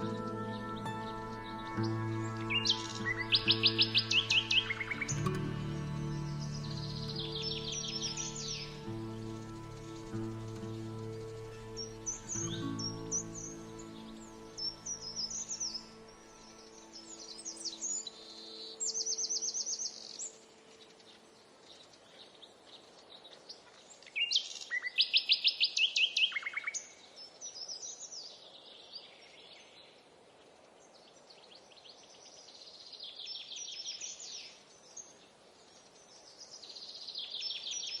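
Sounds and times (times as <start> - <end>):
songbird singing high trills: 0.0 - 20.5.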